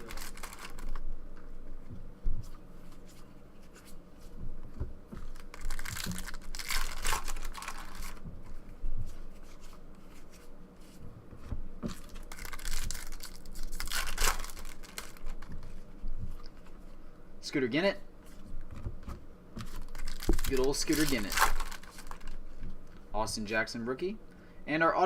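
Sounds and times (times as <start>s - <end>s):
wrappers tearing and crinkling: 0.0s - 1.1s, 5.3s - 8.2s, 11.8s - 15.8s, 19.7s - 22.4s.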